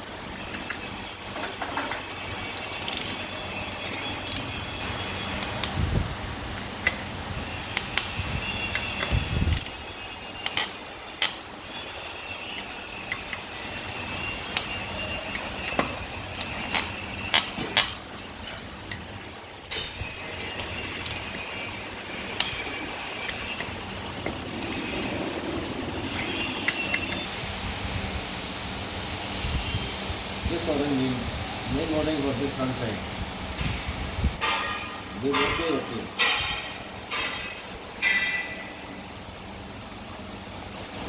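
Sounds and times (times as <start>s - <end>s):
hand tools clinking on metal: 34.4s - 38.7s.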